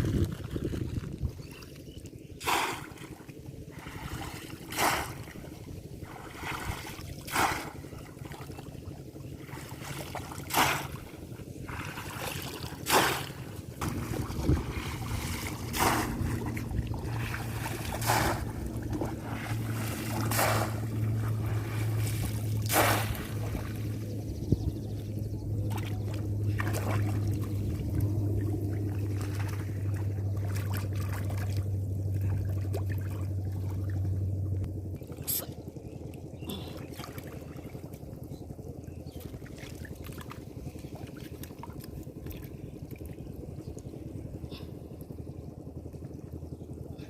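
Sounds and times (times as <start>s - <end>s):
low motor hum: 0.0s - 47.0s
water splashing slaps: 2.4s - 8.6s, 9.4s - 24.0s, 25.6s - 34.0s.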